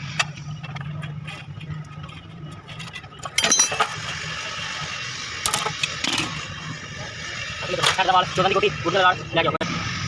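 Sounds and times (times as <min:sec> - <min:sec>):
steady low hum: 0:00.0 - 0:10.0
metal tools clinking: 0:00.6 - 0:04.1
loud metallic clatter and ringing: 0:02.8 - 0:04.2.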